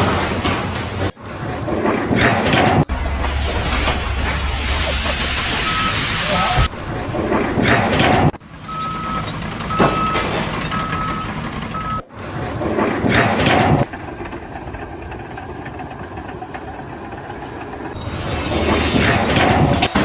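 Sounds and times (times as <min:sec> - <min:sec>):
rushing noise: 0:01.2 - 0:08.4, 0:17.9 - 0:20.0
reversing alarm beeping: 0:02.9 - 0:06.8, 0:08.6 - 0:12.1.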